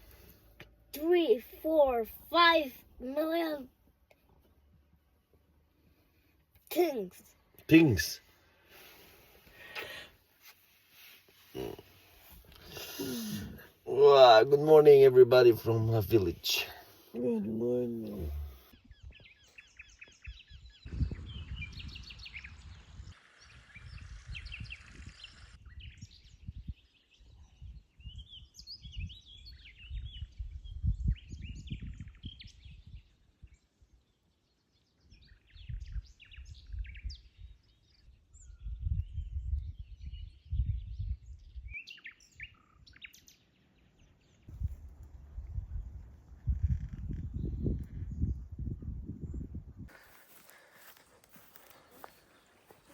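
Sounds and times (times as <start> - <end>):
birds chirping and singing: 11.4 - 44.8, 45.5 - 52.9.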